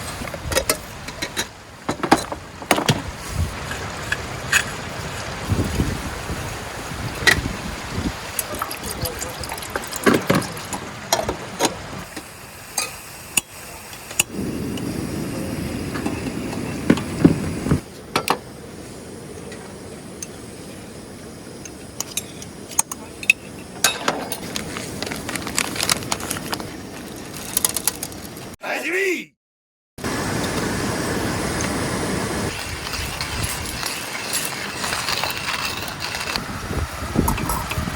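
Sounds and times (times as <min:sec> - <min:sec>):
camp gear clinking and knocking: 0:00.2 - 0:05.2, 0:22.0 - 0:28.4.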